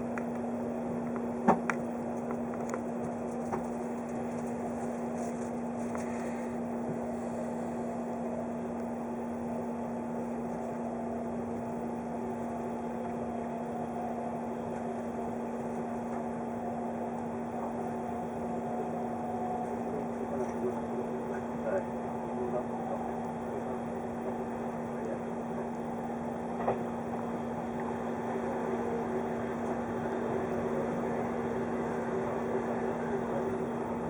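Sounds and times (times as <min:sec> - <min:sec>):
train carriage electrical hum: 0:00.0 - 0:34.0.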